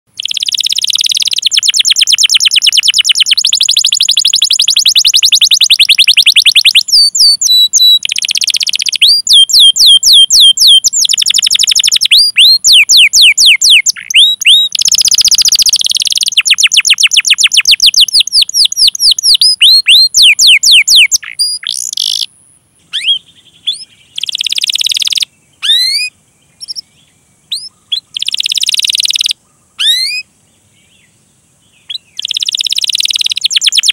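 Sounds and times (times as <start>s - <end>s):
canary singing trills: 0.1s - 33.9s.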